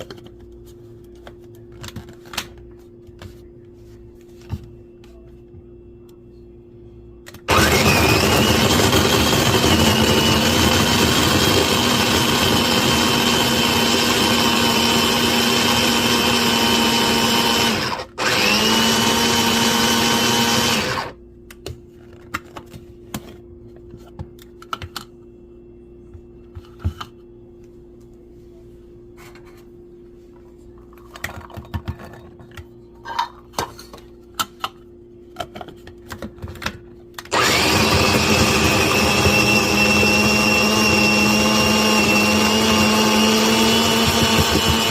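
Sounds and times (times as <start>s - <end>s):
low steady hum: 0.0s - 8.3s, 21.0s - 37.3s
food chopper motor whining: 7.5s - 21.2s, 37.3s - 44.9s.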